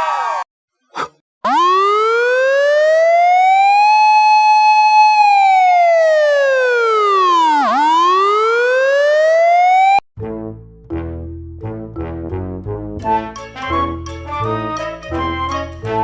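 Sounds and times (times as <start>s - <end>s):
siren wailing: 1.5s - 10.0s.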